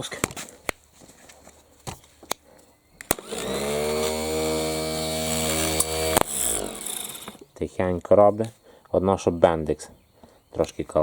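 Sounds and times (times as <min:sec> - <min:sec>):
sharp clicks: 0:03.0 - 0:07.5
starter motor whining: 0:03.1 - 0:07.5.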